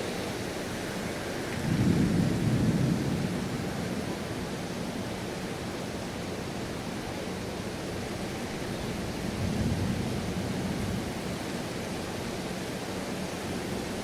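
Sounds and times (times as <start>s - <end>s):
steady rain falling: 0.0s - 14.0s
low thunder rumble: 1.6s - 4.4s, 9.2s - 11.2s.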